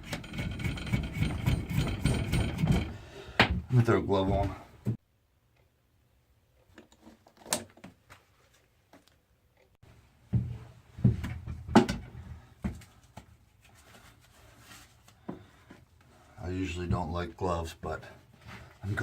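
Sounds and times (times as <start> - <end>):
knocks and rustling: 0.0 - 5.0, 10.2 - 13.4.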